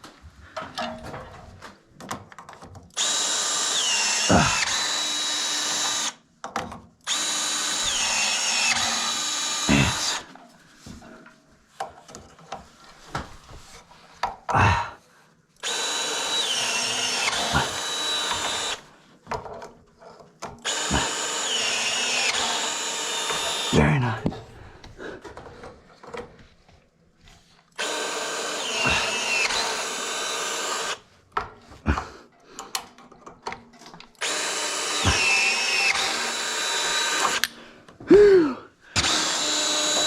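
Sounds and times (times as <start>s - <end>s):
power drill whining: 2.9s - 6.2s, 7.0s - 10.4s, 15.6s - 19.0s, 20.6s - 24.3s, 27.8s - 31.1s, 34.2s - 37.6s, 38.9s - 40.0s.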